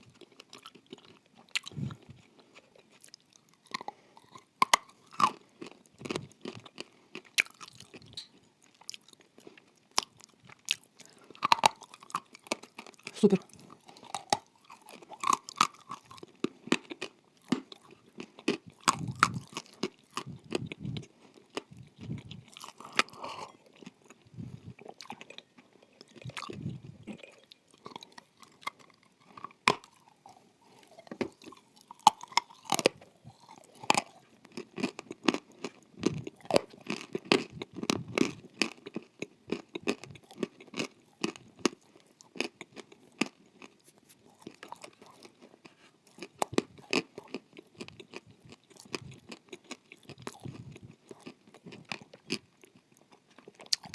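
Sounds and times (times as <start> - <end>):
crunchy bites and chewing: 0.0 - 53.9.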